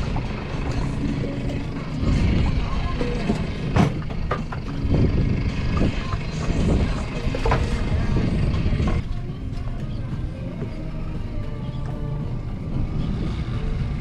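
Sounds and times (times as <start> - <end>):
boat engine rumble: 0.0 - 14.0
wind on microphone: 4.8 - 9.0.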